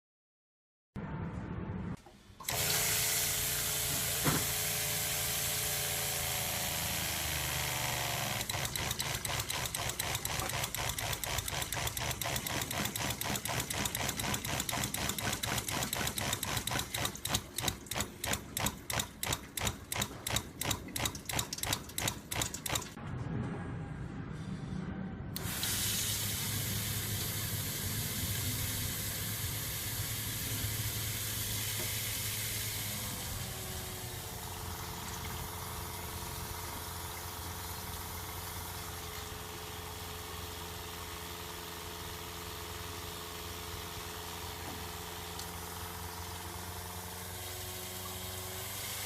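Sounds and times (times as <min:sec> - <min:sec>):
diaphragm pump pulsing: 0:06.9 - 0:23.0.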